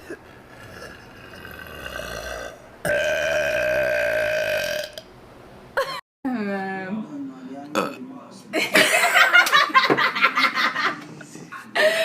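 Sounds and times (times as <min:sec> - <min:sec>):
girl burping: 0:00.0 - 0:05.0.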